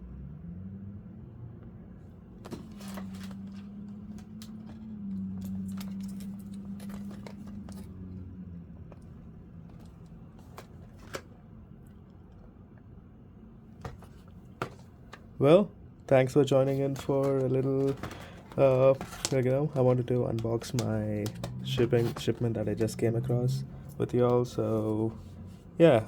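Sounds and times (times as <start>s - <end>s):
clicks and taps handling packaging: 2.4s - 7.9s, 13.8s - 15.2s, 16.1s - 24.7s.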